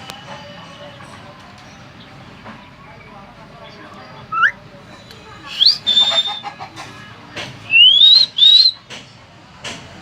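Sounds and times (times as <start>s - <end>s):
myna bird whistling: 4.3s - 4.6s, 5.5s - 6.5s, 7.7s - 8.9s.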